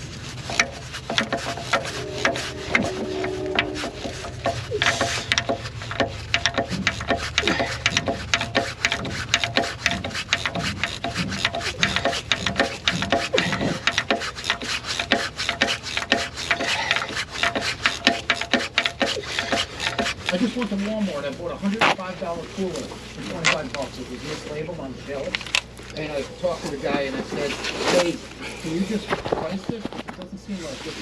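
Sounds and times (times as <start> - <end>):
rapid rubbing and scraping: 0.0 - 31.0.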